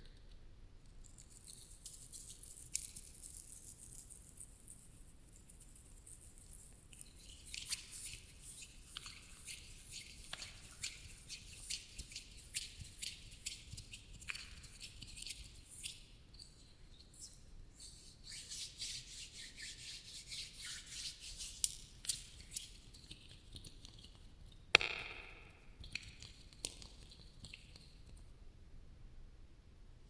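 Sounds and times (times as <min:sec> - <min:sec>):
crackly rubbing and scratching: 0:01.0 - 0:17.3
sharp tap with echo: 0:24.7 - 0:25.6.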